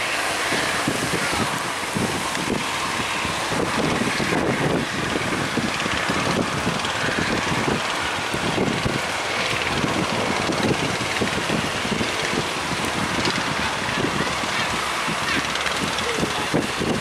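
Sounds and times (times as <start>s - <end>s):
surf rushing: 0.0s - 17.0s
wind buffeting microphone: 0.0s - 17.0s.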